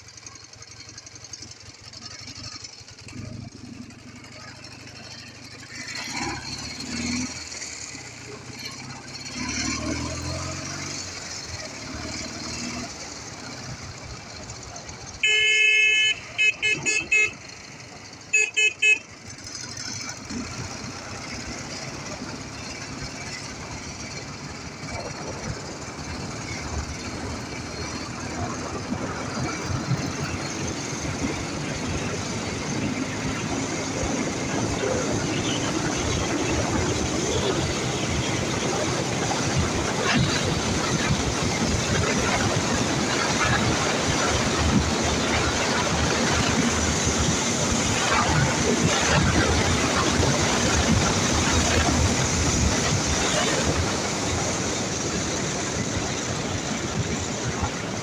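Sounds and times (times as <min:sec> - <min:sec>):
motorcycle engine running: 0:00.0 - 0:58.0
road noise: 0:00.0 - 0:58.0
wind rush on microphone: 0:24.5 - 0:58.0.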